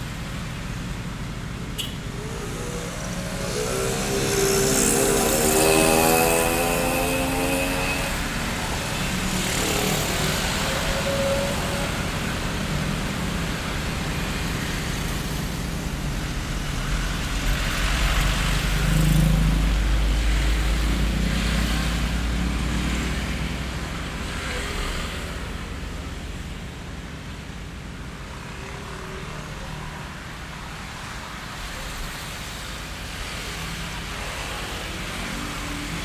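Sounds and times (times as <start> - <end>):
passing vehicles: 0.0 - 36.0
deep engine rumble: 0.8 - 6.1.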